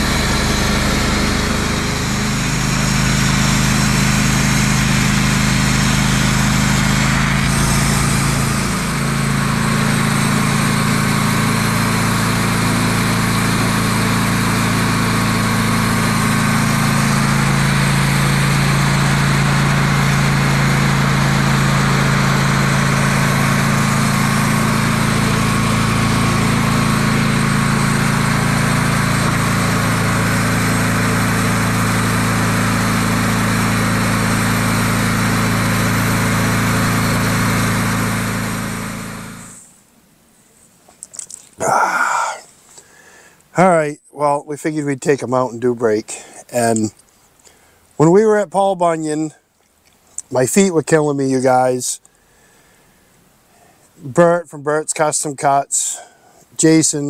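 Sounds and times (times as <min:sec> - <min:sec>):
sawmill engine running: 0:00.0 - 0:39.7, 0:41.2 - 0:47.0.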